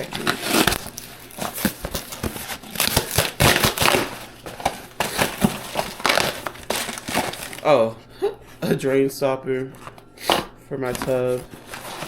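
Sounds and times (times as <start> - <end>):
packaging tearing and crinkling: 0.0 - 7.9.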